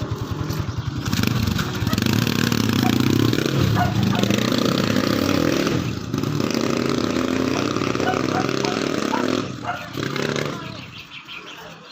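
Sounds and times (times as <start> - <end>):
motorcycle engine revving: 0.0 - 11.4.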